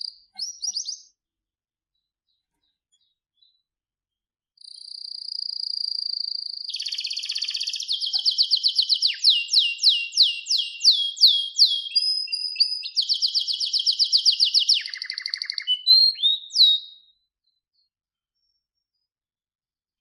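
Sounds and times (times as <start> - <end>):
canary singing: 0.0 - 1.2, 4.6 - 17.2.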